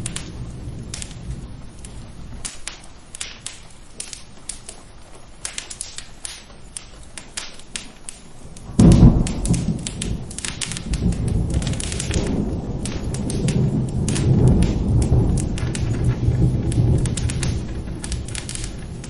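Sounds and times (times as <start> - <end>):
thunder rumbling: 0.0 - 3.9, 8.4 - 19.0
steady rain: 0.0 - 19.0
wood fire crackling: 0.0 - 19.0.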